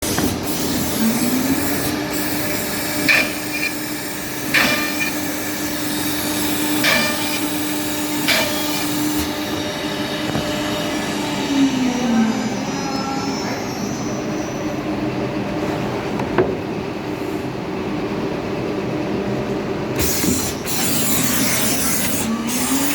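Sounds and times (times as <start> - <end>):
drilling machine motor whine: 0.0 - 15.2
sharp mechanical clacks: 3.0 - 5.6.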